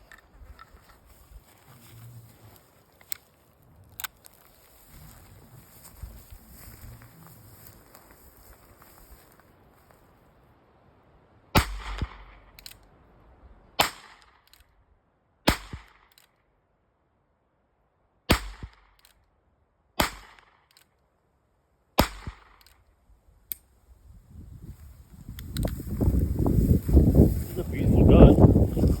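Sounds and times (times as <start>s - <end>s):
revolver gunshots with echo: 11.5s - 12.6s, 13.8s - 14.5s, 15.4s - 16.1s, 18.3s - 19.0s, 20.0s - 20.7s, 22.0s - 22.7s.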